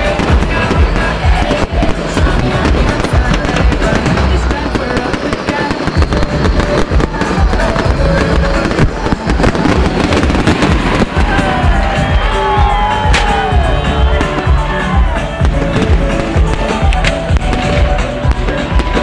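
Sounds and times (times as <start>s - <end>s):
fireworks bangs and crackles: 0.0s - 19.0s
music playing: 0.0s - 19.0s.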